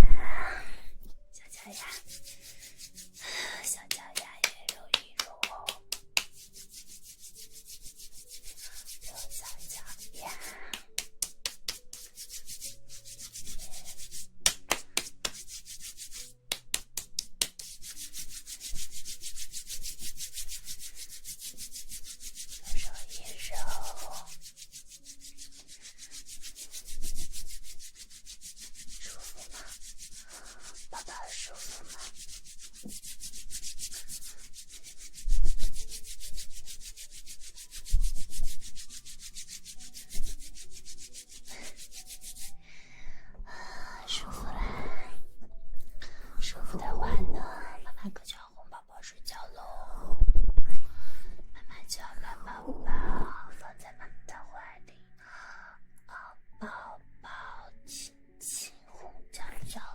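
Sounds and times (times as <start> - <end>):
soft rubbing on microphone: 1.5 - 3.2, 3.8 - 42.6.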